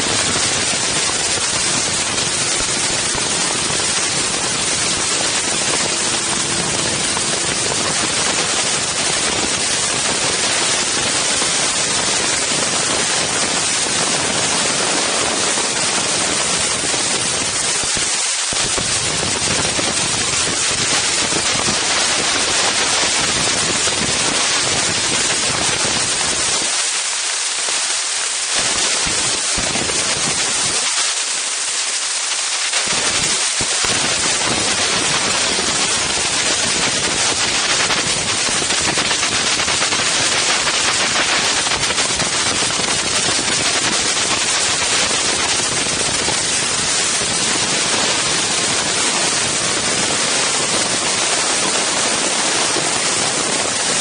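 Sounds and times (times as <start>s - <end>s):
wind buffeting microphone: 0.0s - 26.7s.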